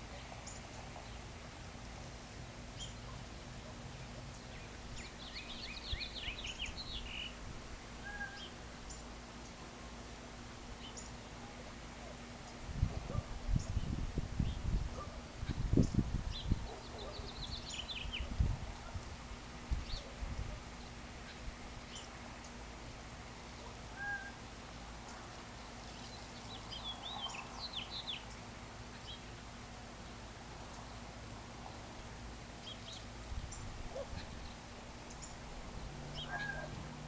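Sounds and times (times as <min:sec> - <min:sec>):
birds chirping: 0:00.0 - 0:01.4, 0:02.5 - 0:10.0, 0:10.7 - 0:19.0, 0:19.7 - 0:37.0.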